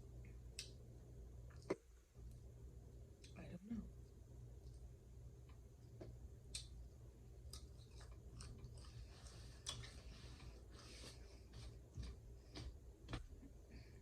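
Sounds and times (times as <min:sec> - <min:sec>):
faint low hum: 0:00.0 - 0:14.0
quiet chewing: 0:07.4 - 0:13.3.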